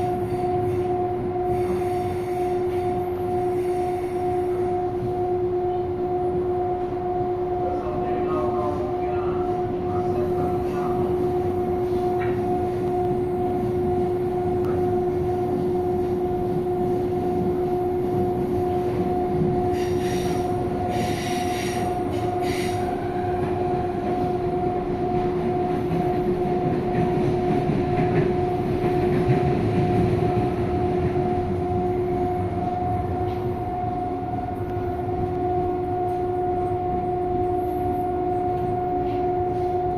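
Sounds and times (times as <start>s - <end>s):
train interior rumble: 0.0s - 39.9s.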